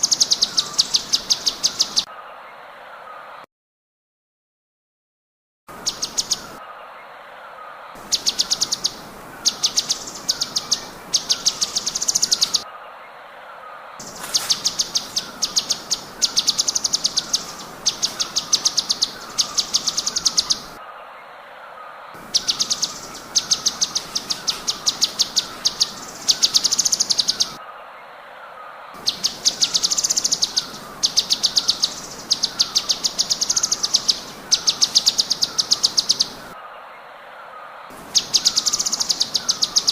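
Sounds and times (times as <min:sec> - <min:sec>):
bird singing rapid high bursts: 0:00.0 - 0:02.1, 0:08.0 - 0:12.7, 0:14.0 - 0:20.8, 0:22.2 - 0:27.6, 0:29.0 - 0:36.6, 0:38.0 - 0:39.9
soft lower chirping: 0:14.0 - 0:20.8, 0:22.2 - 0:27.6, 0:29.0 - 0:36.6.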